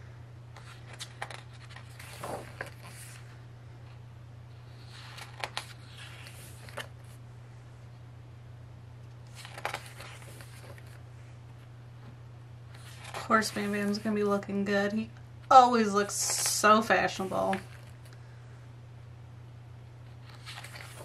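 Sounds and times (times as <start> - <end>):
steady low hum: 0.0 - 21.0
paper pages rustling: 0.6 - 3.3, 4.7 - 7.2, 9.2 - 11.0, 12.7 - 14.1, 20.0 - 21.0.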